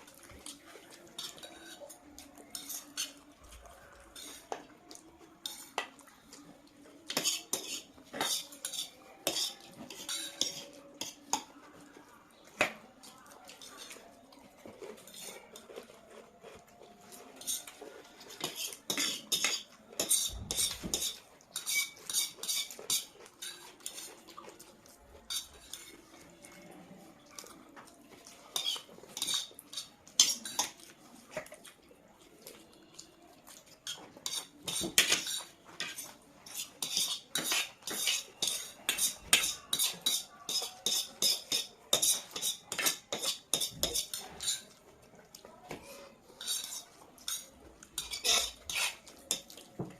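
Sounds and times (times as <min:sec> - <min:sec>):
cutlery clinking on a plate: 0:01.1 - 0:03.2, 0:07.1 - 0:11.5, 0:17.4 - 0:24.1, 0:28.5 - 0:31.6, 0:33.8 - 0:44.8, 0:46.4 - 0:49.9.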